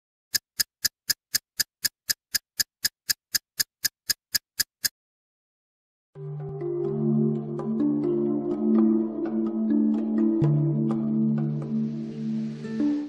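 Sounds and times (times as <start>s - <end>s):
mechanical ticking: 0.3s - 4.9s
soft sustained music: 6.2s - 13.0s.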